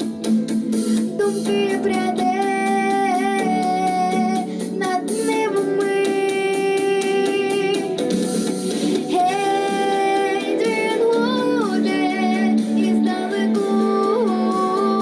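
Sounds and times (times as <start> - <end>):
pop backing track with beat: 0.0 - 15.0.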